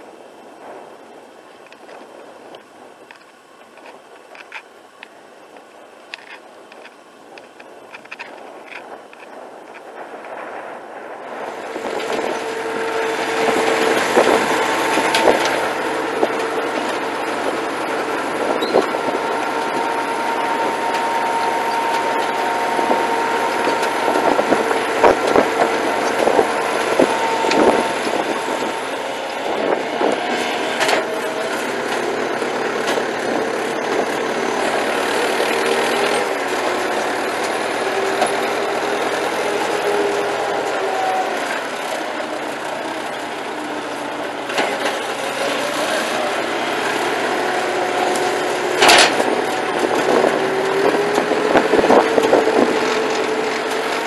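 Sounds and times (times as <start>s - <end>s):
engine whine: 0.0s - 54.0s
tractor engine running: 0.0s - 54.0s.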